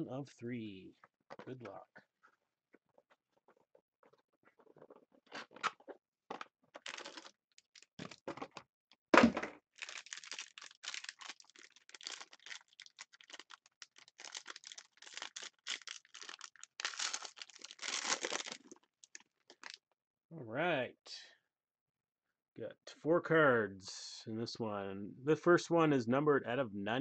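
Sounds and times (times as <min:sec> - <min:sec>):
crackles and clicks of packaging: 0:04.1 - 0:08.6, 0:09.7 - 0:19.8
wrapping crinkling and rustling: 0:06.7 - 0:08.3, 0:09.7 - 0:19.8.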